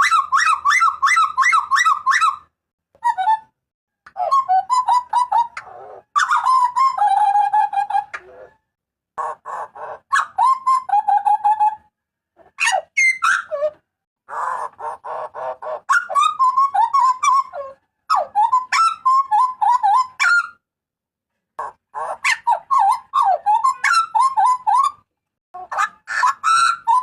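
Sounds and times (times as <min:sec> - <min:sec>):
bird harsh chatter: 0:14.3 - 0:17.6.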